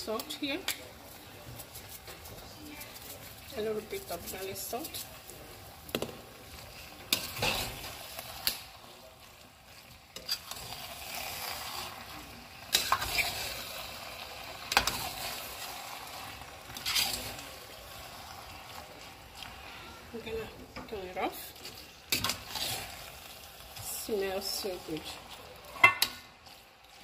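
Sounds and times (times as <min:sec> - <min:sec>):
low steady sizzle: 0:00.0 - 0:27.0
spoon scraping pan: 0:05.9 - 0:08.7, 0:09.7 - 0:26.6.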